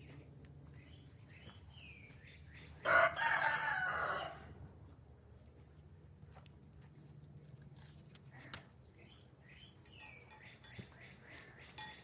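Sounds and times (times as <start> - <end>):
rooster crowing: 2.9 - 4.4.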